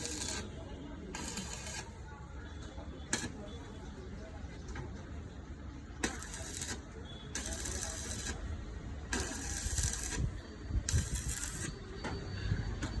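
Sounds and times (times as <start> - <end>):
arc welding crackling hiss: 0.0 - 0.5, 1.2 - 2.0, 3.1 - 3.4, 6.0 - 8.4, 9.1 - 11.8.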